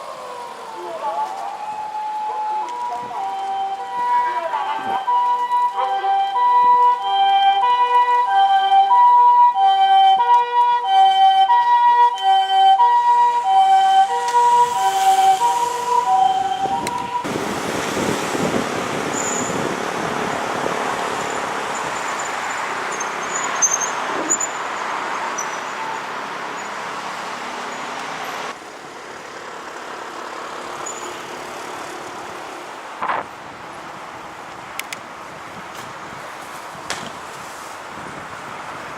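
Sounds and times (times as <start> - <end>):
ambulance two-tone siren: 0.0 - 17.4
road and wind noise: 0.0 - 38.9.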